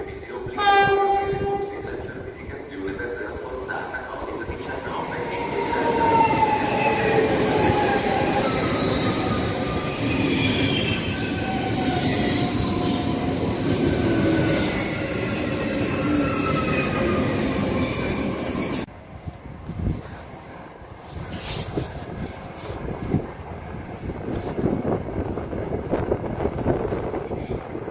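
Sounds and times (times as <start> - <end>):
train wheels squealing: 5.4 - 18.9.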